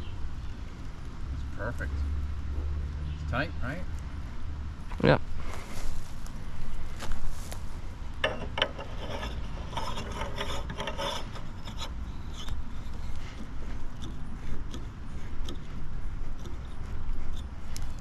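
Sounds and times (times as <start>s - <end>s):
low steady rumble: 0.0s - 18.0s
metal parts scraping: 8.2s - 12.7s.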